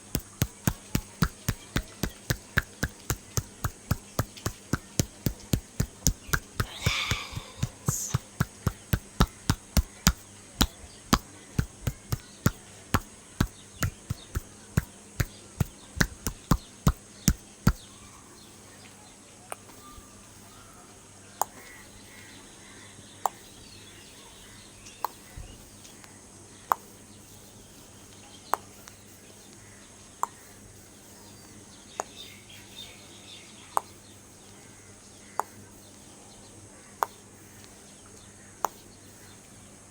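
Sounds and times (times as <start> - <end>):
hands slapping on body: 0.0 - 17.9.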